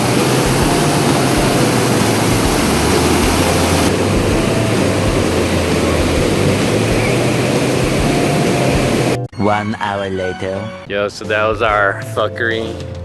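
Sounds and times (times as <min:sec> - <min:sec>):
waterfall rushing: 0:00.0 - 0:09.2.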